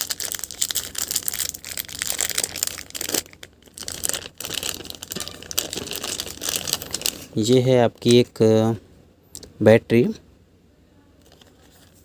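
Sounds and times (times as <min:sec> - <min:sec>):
plastic packet crinkling: 0:00.0 - 0:08.3.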